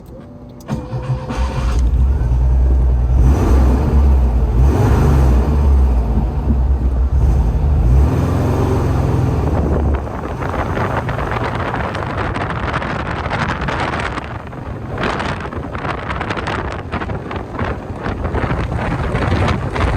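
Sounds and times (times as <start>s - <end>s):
car road noise: 0.0s - 19.9s
heavy low rumble: 0.0s - 19.9s
wind buffeting microphone: 1.1s - 19.9s.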